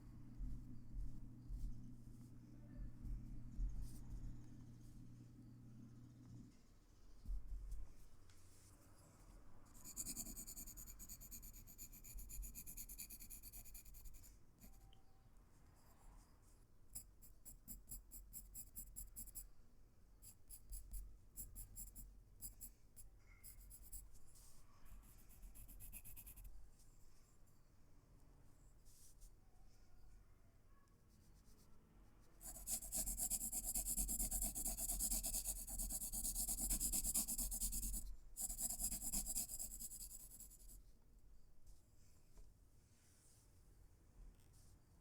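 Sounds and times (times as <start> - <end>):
pencil scratching on paper: 9.8 - 14.8, 17.0 - 19.4, 20.2 - 26.5, 32.4 - 40.8.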